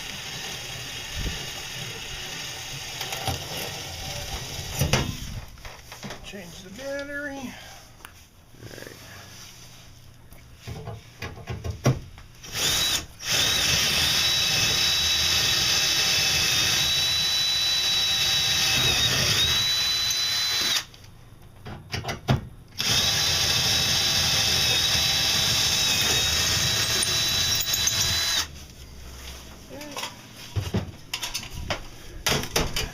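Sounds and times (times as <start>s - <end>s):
power drill boring into wood: 0.0s - 4.7s, 12.4s - 20.9s, 22.8s - 28.5s.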